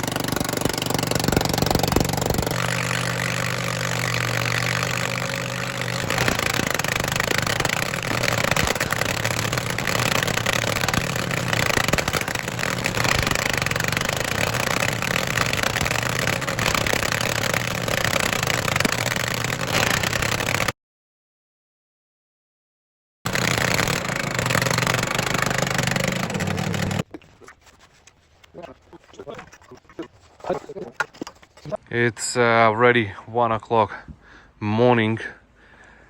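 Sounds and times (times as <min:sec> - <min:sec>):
cutter wheel grinding stump: 0:00.0 - 0:20.7, 0:23.3 - 0:27.1
stump grinder engine running: 0:00.0 - 0:20.7, 0:23.3 - 0:27.1.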